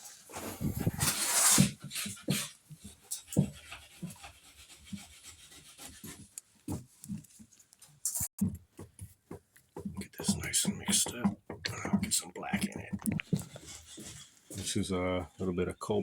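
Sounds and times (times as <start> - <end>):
stir stick scraping in a cup: 9.8 - 15.4.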